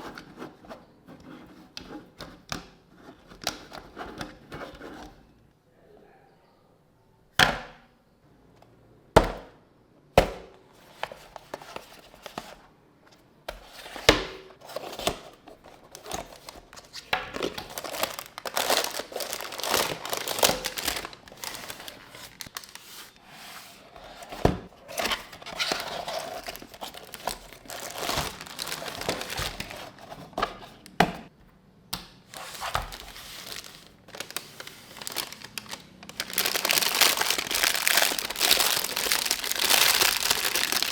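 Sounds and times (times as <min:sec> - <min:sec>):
plastic packaging crinkling: 0:15.8 - 0:23.2, 0:24.9 - 0:30.3, 0:32.3 - 0:40.9.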